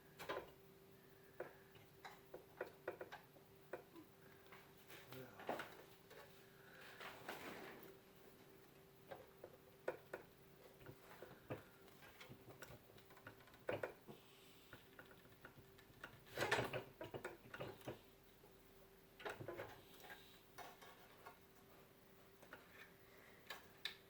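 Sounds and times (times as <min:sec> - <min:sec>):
faint steady hum: 0:00.0 - 0:24.0
computer hardware clicks and knocks: 0:01.4 - 0:03.9, 0:09.0 - 0:14.1, 0:14.7 - 0:18.1, 0:19.2 - 0:21.4.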